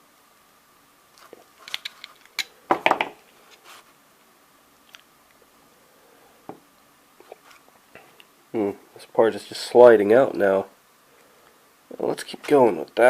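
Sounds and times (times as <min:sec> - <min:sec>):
battery casing scraping and crackling: 0:01.2 - 0:02.5.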